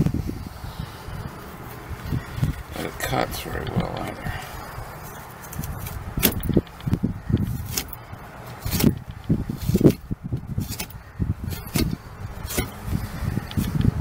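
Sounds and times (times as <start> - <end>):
cutter scraping seat belt webbing: 5.4 - 14.0.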